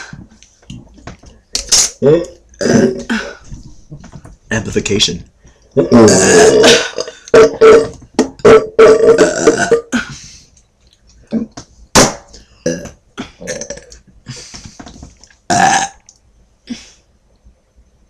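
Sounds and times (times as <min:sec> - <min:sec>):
person burping loudly: 0:01.6 - 0:03.4, 0:05.8 - 0:10.1, 0:11.3 - 0:11.6, 0:12.6 - 0:14.0, 0:15.5 - 0:16.1.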